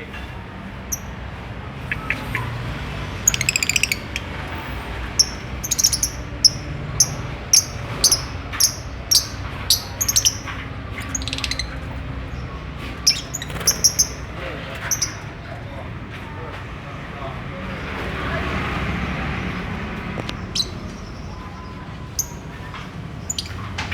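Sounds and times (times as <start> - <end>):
lovebirds chirping: 0.7 - 15.4, 20.2 - 23.9.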